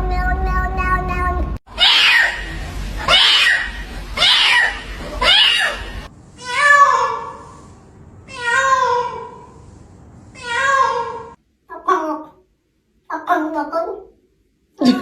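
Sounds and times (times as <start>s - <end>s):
cat meowing: 0.0s - 7.5s, 8.3s - 9.5s, 10.4s - 11.4s.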